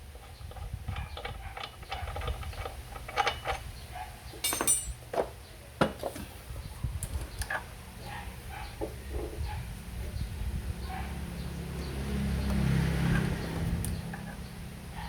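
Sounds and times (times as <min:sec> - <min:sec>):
metal tools clinking and tapping: 0:00.6 - 0:03.7, 0:04.3 - 0:05.3.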